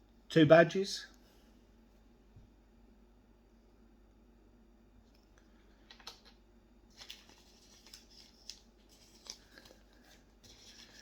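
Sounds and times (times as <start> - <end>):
paper and plastic rustling: 5.9 - 11.0.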